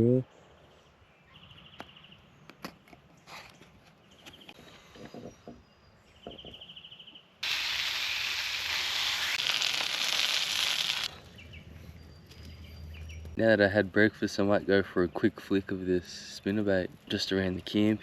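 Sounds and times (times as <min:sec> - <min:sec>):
loud steady hiss: 0:07.4 - 0:11.1.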